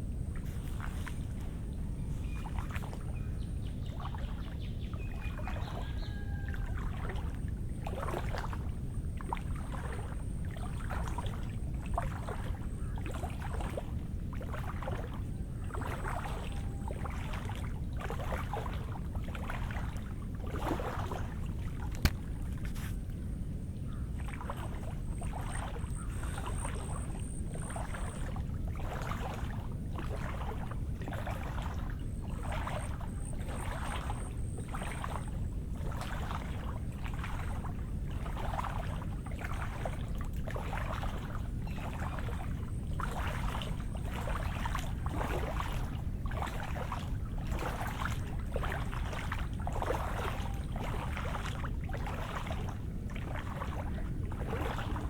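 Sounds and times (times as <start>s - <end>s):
squelching footsteps in wet ground: 0.2s - 4.5s, 5.1s - 23.2s, 23.9s - 55.0s
steady low rumble: 21.2s - 55.0s.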